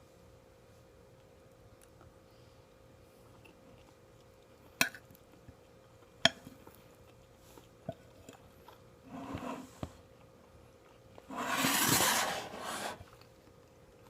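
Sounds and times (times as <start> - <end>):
short scrape: 11.3 - 13.0.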